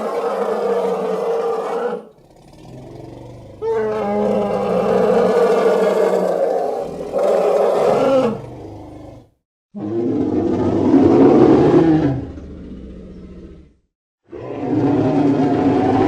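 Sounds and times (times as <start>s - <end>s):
long roars: 0.0s - 16.0s.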